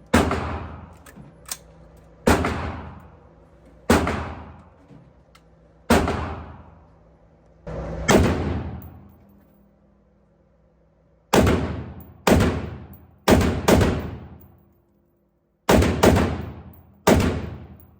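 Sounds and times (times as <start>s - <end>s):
rifle shots: 0.1s - 0.9s, 2.2s - 3.0s, 3.9s - 4.6s, 5.9s - 6.7s, 8.0s - 8.9s, 11.3s - 14.4s, 15.7s - 17.8s.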